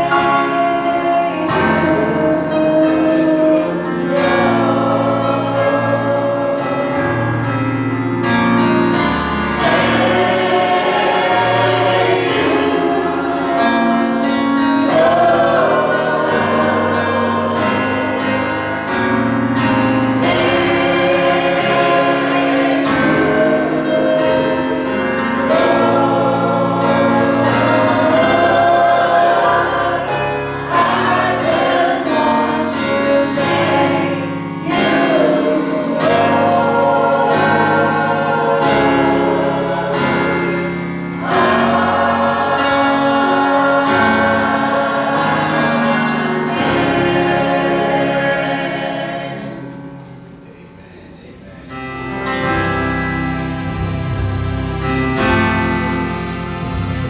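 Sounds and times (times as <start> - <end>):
choir singing gospel song: 0.0 - 57.0
instrumental accompaniment: 0.0 - 57.0
steady bass line: 51.8 - 57.0.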